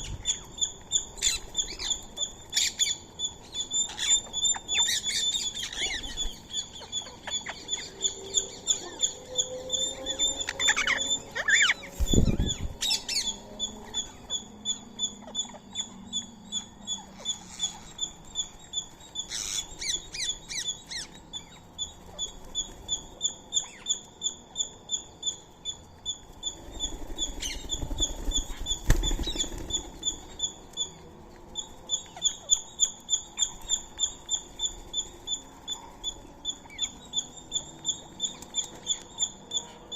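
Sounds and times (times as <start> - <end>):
high repeated bird chirps: 0.0 - 31.0
birds chirping and squawking: 0.0 - 39.9.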